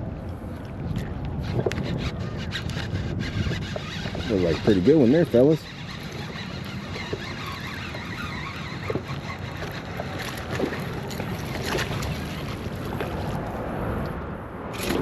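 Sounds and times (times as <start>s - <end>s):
water noise: 0.0s - 15.0s
wind: 0.0s - 15.0s
fishing reel clicks: 2.4s - 10.5s
fish splashing: 5.6s - 13.5s.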